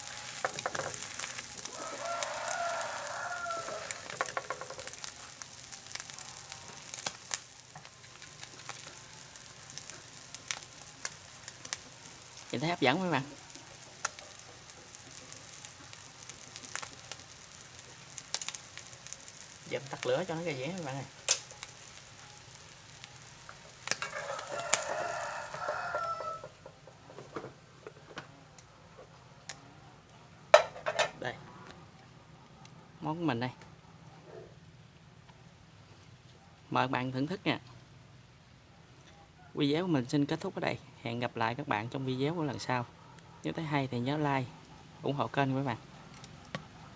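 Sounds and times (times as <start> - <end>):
rooster crowing: 0.0 - 4.9, 23.9 - 27.5
sharp crackling pops: 0.0 - 28.7
egg mixture frying in hot oil: 0.0 - 28.8
utensil clicking against pan: 3.6 - 5.1.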